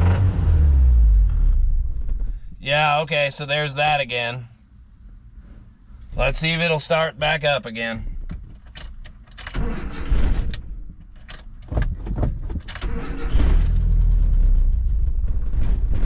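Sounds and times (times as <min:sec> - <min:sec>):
car engine running: 0:00.0 - 0:03.2.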